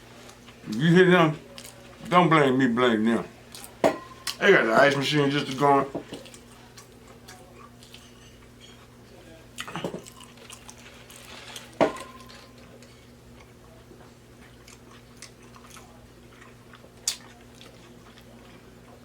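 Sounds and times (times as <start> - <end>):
person biting and chewing: 14.6 - 18.5.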